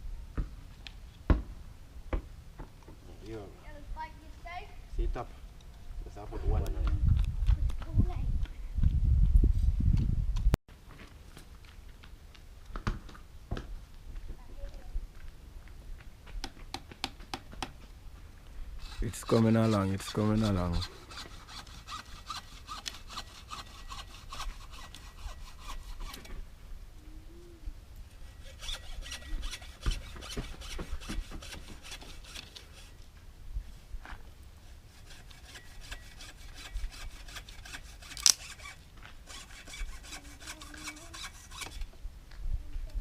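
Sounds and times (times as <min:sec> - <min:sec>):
blade sawing through wood: 0:18.8 - 0:26.3, 0:28.1 - 0:33.0, 0:34.6 - 0:41.9.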